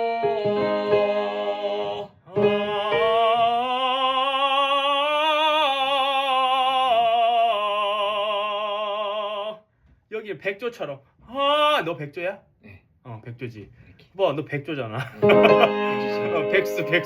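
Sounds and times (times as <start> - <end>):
piano chords: 0.0 - 4.0, 15.2 - 17.0
person singing operatic vocalise: 0.0 - 9.6.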